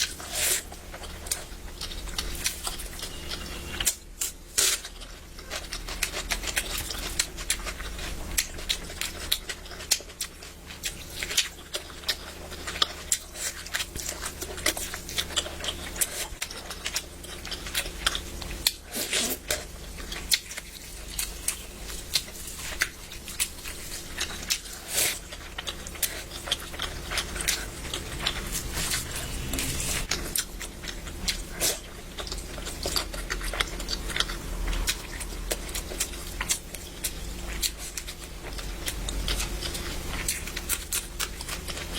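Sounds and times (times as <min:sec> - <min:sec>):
person chewing with mouth smacks: 0:00.0 - 0:41.9
steady low hum: 0:00.0 - 0:41.9.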